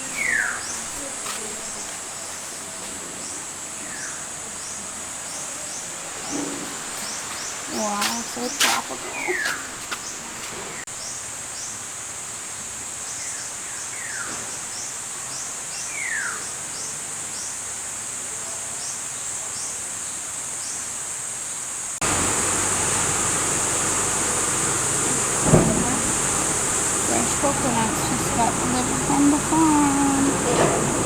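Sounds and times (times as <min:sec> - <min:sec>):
birds whistling and chirping: 0:00.0 - 0:01.0.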